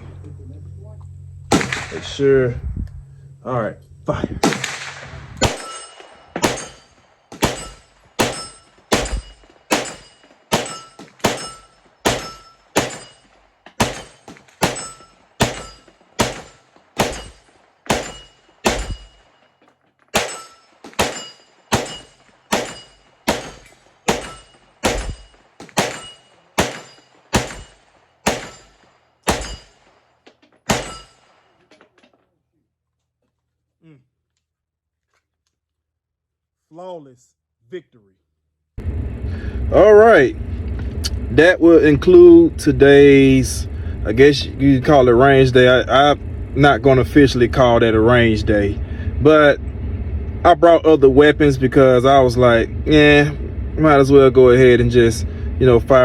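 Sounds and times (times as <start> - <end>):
gunshots: 1.5 - 2.2, 4.4 - 19.4, 20.2 - 30.1, 30.7 - 31.6.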